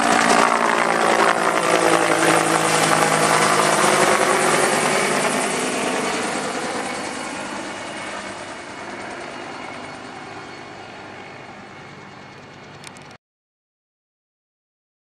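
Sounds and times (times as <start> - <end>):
helicopter rotor and engine: 0.0 - 13.2.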